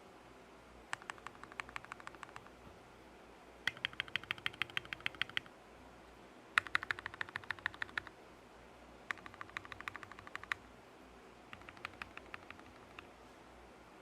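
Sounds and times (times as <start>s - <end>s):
mechanical keyboard clicks: 0.9s - 2.5s, 3.7s - 5.5s, 6.6s - 8.1s, 9.1s - 10.6s, 11.5s - 13.1s.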